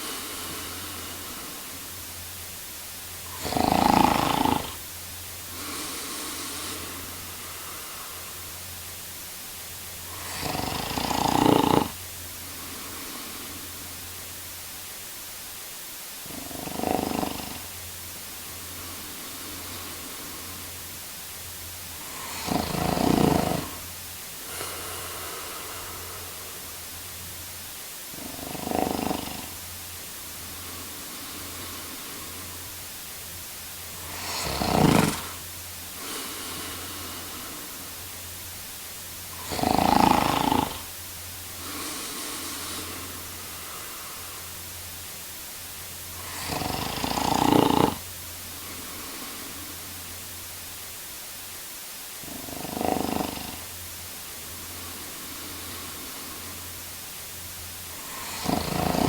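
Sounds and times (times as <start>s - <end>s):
breath sound: 0.0s - 2.1s, 22.0s - 26.9s, 41.5s - 44.8s
man snoring: 0.0s - 2.1s, 3.2s - 4.9s, 5.5s - 8.6s, 10.0s - 14.0s, 16.2s - 17.8s, 18.6s - 20.8s, 21.9s - 26.8s, 28.1s - 29.7s, 30.4s - 32.8s, 33.9s - 38.1s, 39.3s - 44.6s, 46.1s - 50.0s, 52.2s - 53.8s, 54.4s - 56.8s, 57.9s - 59.0s.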